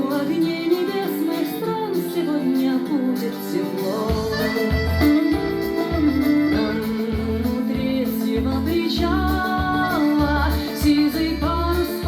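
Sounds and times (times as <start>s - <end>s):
plucked guitar: 0.0s - 12.0s
heavy pulsing bass: 4.1s - 12.0s.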